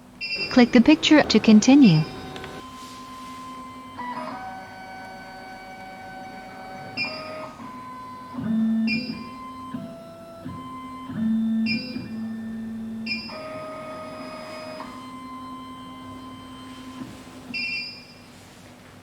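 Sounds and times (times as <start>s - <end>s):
stepper motors whining: 0.0s - 17.6s.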